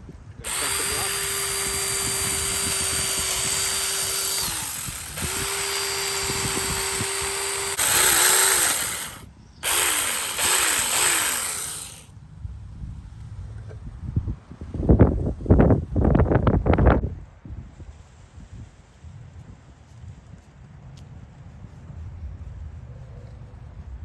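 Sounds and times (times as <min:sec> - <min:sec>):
chainsaw cutting wood: 0:00.4 - 0:12.1
mini chainsaw motor whine: 0:00.4 - 0:12.1.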